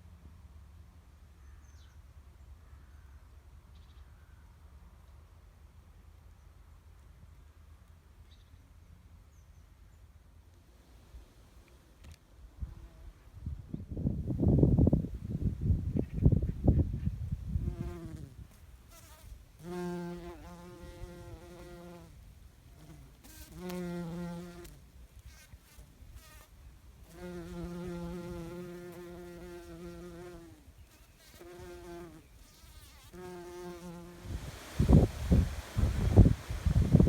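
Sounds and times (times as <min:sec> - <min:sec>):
flying insect buzzing: 0:22.8 - 0:26.5, 0:27.1 - 0:35.4.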